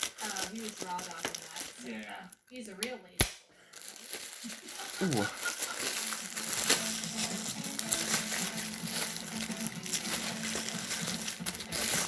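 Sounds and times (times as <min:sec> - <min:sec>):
plastic packaging crinkling: 0:00.0 - 0:02.6, 0:03.6 - 0:12.0.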